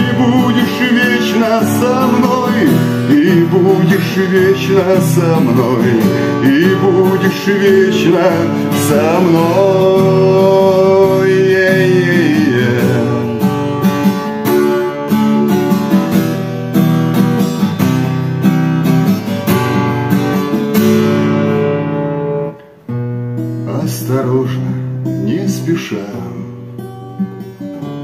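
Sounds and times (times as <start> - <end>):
person singing with vibrato: 0.0 - 13.8
strummed acoustic guitar: 0.0 - 28.0.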